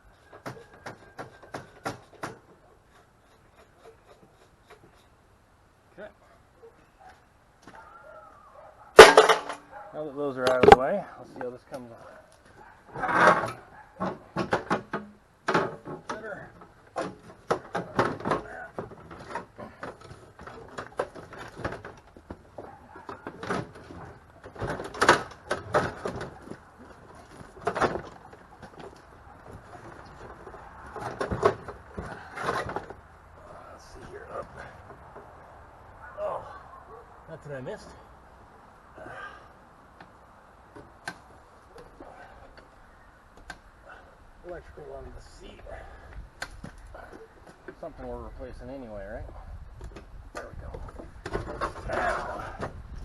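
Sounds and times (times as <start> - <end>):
knocks and clunks of mower body: 10.4 - 11.6, 12.9 - 35.4, 49.2 - 53.0
mower body scraping on frame: 12.9 - 14.2.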